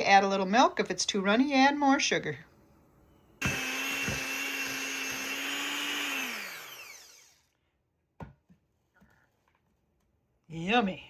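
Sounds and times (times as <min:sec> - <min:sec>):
electric mixer running: 0:03.4 - 0:07.5.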